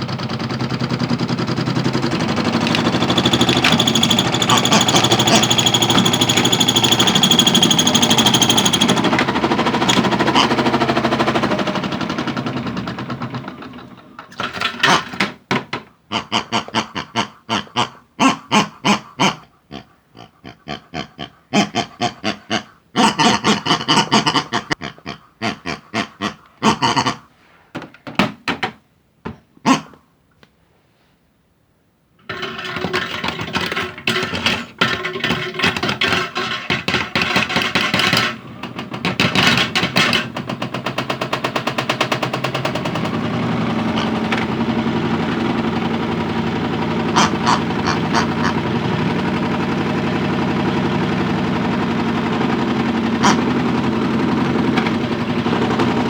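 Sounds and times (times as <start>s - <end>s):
clattering knocks: 0.0s - 15.9s, 32.2s - 56.0s
toy washing machine motor rattling: 0.0s - 15.9s, 32.2s - 56.0s.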